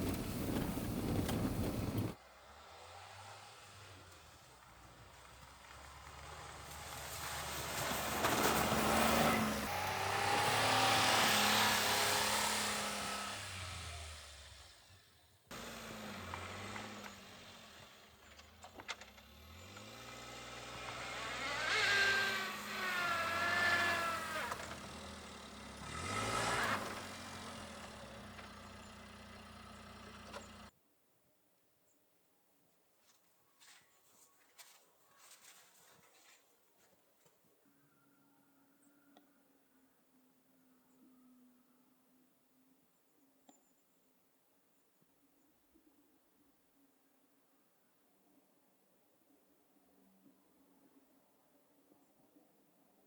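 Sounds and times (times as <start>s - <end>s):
vehicle driving past: 2.0s - 18.3s, 19.2s - 30.7s.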